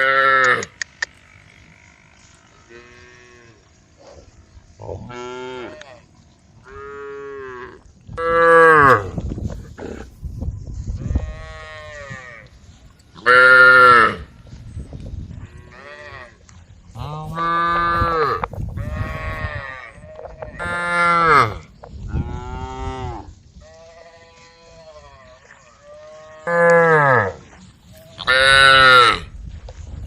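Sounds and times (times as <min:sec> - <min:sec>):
cows mooing: 0:00.0 - 0:10.1, 0:13.2 - 0:14.3, 0:15.4 - 0:27.5.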